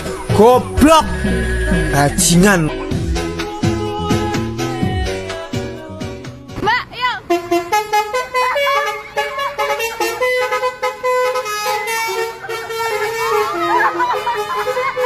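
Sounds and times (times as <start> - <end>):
multi-trumpet air horn tune: 7.3 - 15.0.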